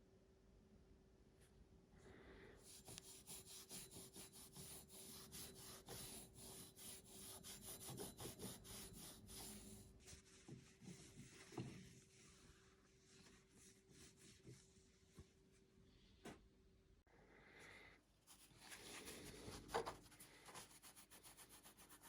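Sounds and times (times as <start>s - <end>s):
cloth rubbing strokes: 2.7s - 15.7s.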